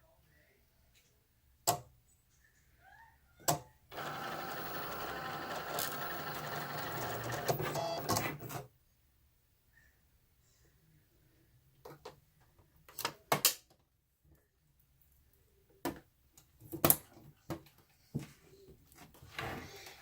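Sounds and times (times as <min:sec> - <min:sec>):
cutting machine grinding: 0:03.9 - 0:08.5.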